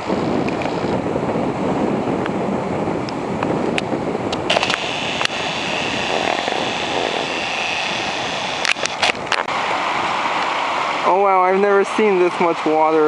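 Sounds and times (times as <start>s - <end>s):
sharp clicks: 4.3s - 9.5s
stream rushing: 7.2s - 13.0s.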